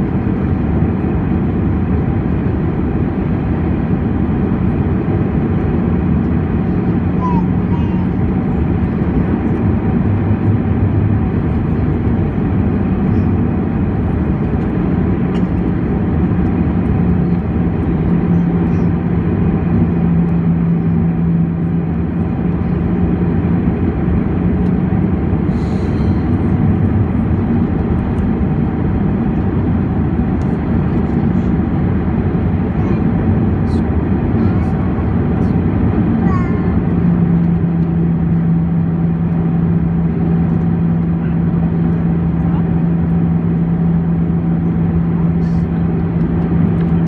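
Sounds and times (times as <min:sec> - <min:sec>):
aircraft cabin engine rush: 0:00.0 - 0:47.0
low even hum: 0:08.5 - 0:32.3.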